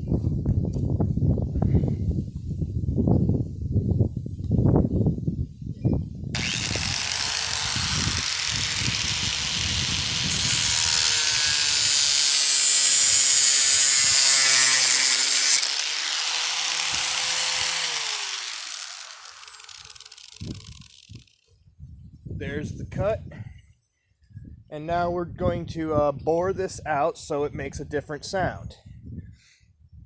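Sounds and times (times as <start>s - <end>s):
grinder disc hissing on plastic: 6.4s - 21.3s
angle grinder motor whine: 6.4s - 21.4s.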